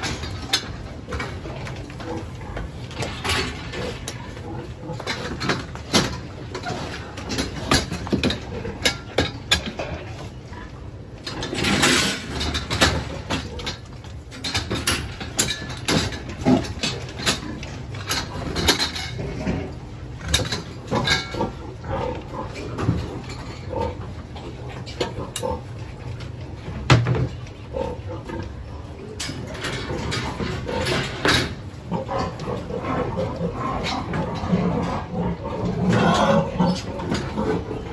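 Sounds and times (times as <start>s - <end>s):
knocks and clatter: 0.0s - 10.0s, 11.2s - 19.6s, 26.8s - 27.5s
pig noises: 0.0s - 37.9s.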